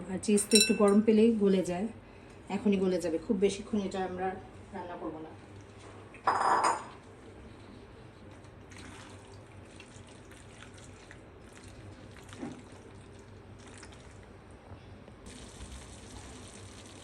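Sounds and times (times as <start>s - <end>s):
pasta sauce bubbling and sizzling: 15.3s - 17.0s.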